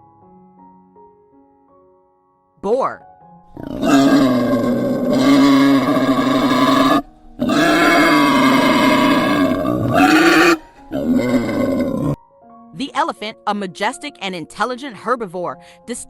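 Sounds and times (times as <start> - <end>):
wild boar calling: 3.5 - 12.2.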